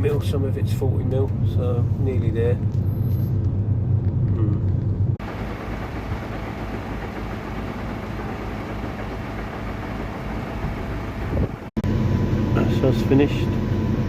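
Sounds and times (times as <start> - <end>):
loud low rumble: 3.3 - 14.0
heavy diesel machinery running: 5.0 - 14.0.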